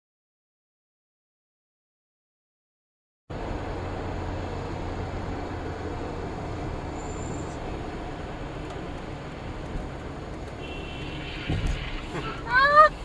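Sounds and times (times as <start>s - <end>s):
low engine hum: 3.3s - 13.0s
road and tyre noise: 3.3s - 13.0s.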